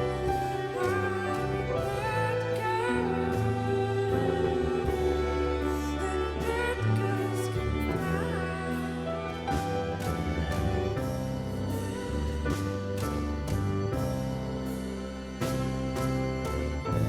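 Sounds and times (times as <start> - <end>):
person singing: 0.0 - 10.8
slow dance music with bass: 0.0 - 17.0.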